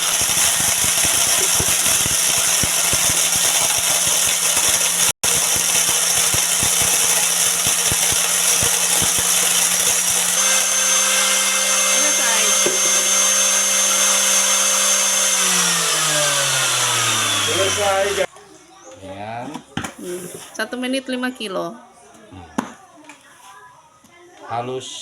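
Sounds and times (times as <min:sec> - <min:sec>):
corn kernels crackling and knocking: 0:00.0 - 0:18.2
angle grinder motor whine: 0:00.0 - 0:18.3.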